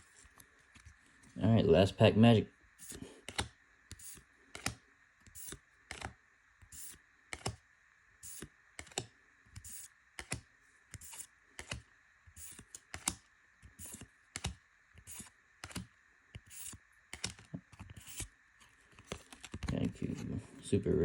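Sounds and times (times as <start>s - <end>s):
cards swishing and tapping: 8.3s - 11.8s, 12.4s - 20.4s.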